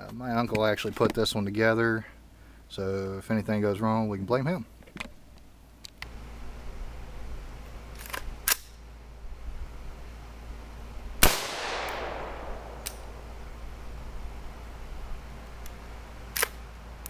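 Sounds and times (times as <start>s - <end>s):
rifle shot with echo: 11.2s - 13.4s.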